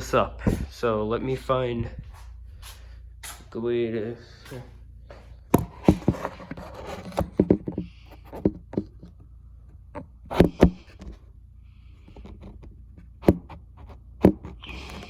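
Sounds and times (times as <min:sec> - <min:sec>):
irregular knocks and clicks: 0:05.1 - 0:11.2, 0:12.1 - 0:15.0.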